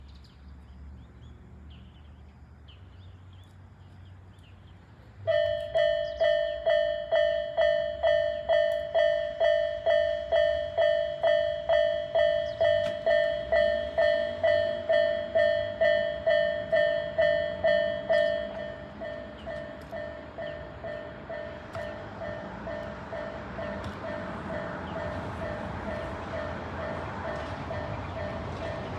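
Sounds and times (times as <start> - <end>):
level crossing alarm dinging: 5.3 - 28.9.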